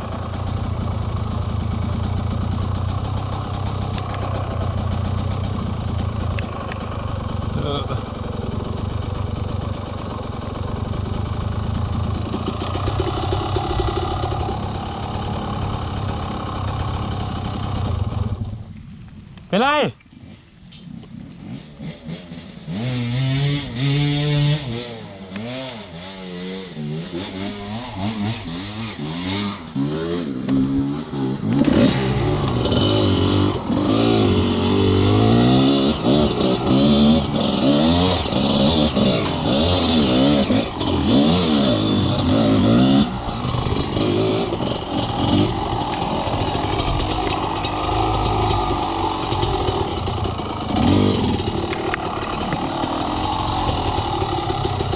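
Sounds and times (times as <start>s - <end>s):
dirt bike engine revving: 1.2s - 18.5s, 20.1s - 54.9s.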